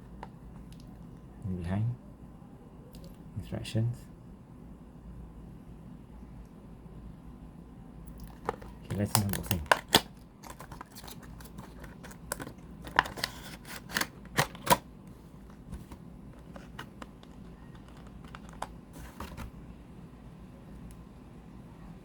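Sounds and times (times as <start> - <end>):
packaging clicks and taps: 8.2 - 14.8, 15.5 - 19.5
packaging rustle: 8.3 - 14.8, 15.4 - 19.5.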